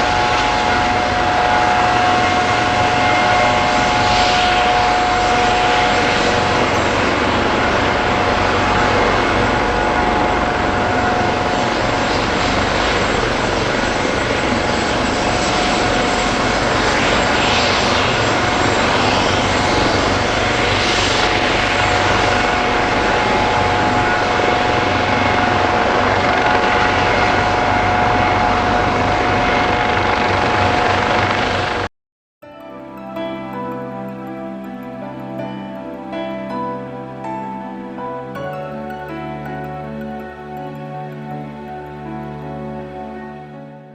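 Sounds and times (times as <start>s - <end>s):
helicopter rotor noise: 0.0s - 31.9s
turbine whine: 0.0s - 31.9s.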